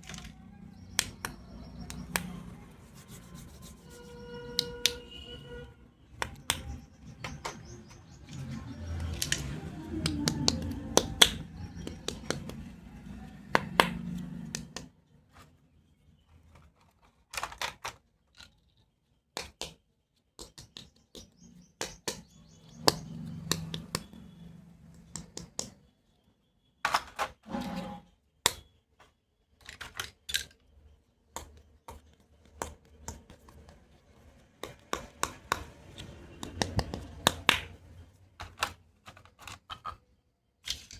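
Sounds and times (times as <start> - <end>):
plastic toy pieces clicking: 0.0 - 2.6, 6.1 - 12.7, 16.7 - 18.8, 29.6 - 30.8, 34.6 - 40.9.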